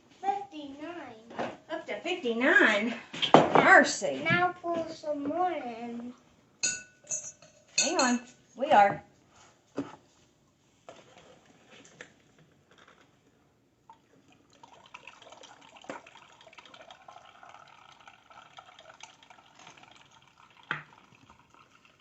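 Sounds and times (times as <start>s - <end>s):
light clicks and drips: 13.8s - 22.0s
water pouring into container: 13.9s - 22.0s.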